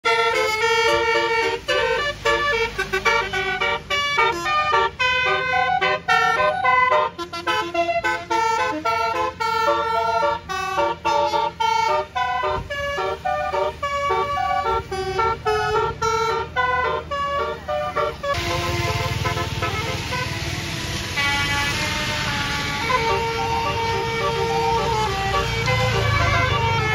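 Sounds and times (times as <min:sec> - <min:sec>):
musical bus air horn tune: 0:00.0 - 0:26.9
loud rushing noise: 0:17.9 - 0:26.9.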